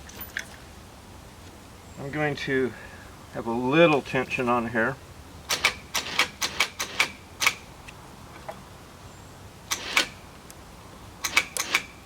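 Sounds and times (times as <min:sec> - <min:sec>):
winch ratchet clicking: 0:11.2 - 0:11.9.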